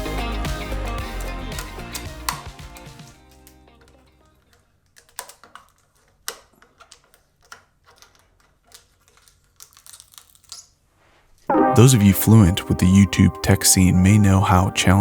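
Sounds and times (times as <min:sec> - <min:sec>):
background music: 0:00.0 - 0:03.1, 0:11.5 - 0:15.0.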